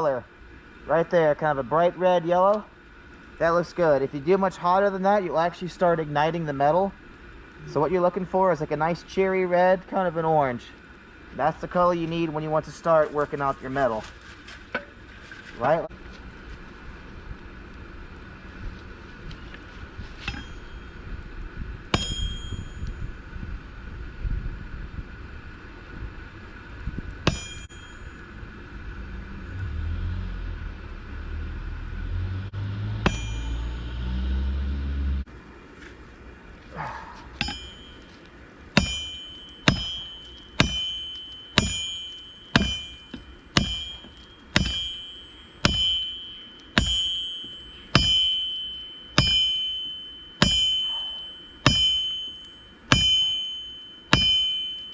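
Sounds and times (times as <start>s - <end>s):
low rumble: 15.9s - 40.7s
hammer blows on hot steel: 19.2s - 23.6s, 26.9s - 28.3s, 32.6s - 35.2s, 36.8s - 54.9s.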